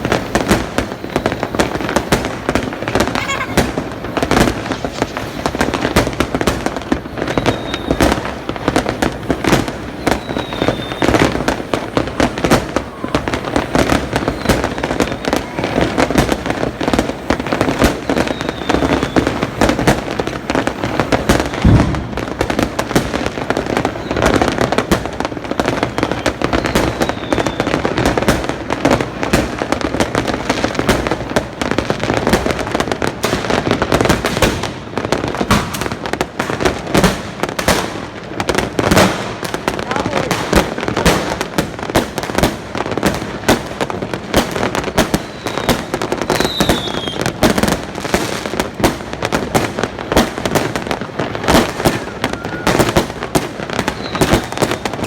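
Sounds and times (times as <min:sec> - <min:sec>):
deep firework boom: 0:00.0 - 0:25.1, 0:34.0 - 0:37.9
fireworks bangs and crackles: 0:00.0 - 0:55.0.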